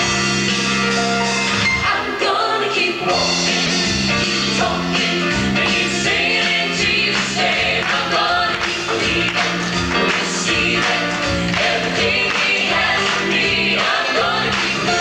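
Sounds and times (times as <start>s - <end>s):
band playing: 0.0s - 2.1s, 2.9s - 15.0s
choir singing gospel: 1.7s - 15.0s.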